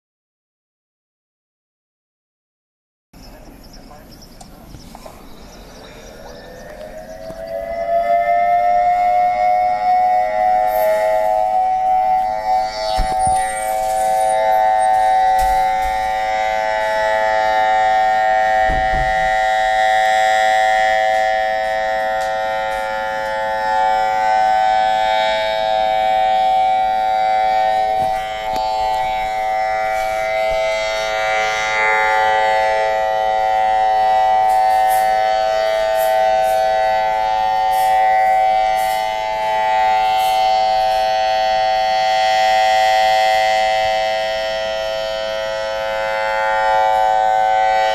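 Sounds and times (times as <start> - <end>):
warning siren steady tone: 3.2 - 47.9.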